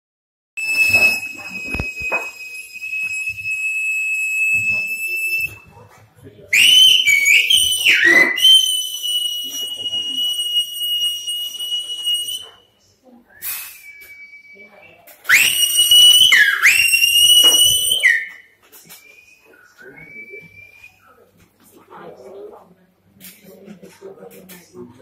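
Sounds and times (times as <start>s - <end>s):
person whistling loud and high: 0.6s - 5.8s, 6.6s - 12.6s, 13.3s - 21.1s.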